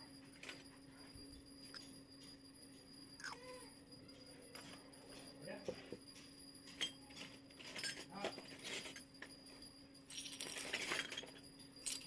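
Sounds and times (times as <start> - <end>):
toy kitchen pieces clicking: 10.1 - 12.0.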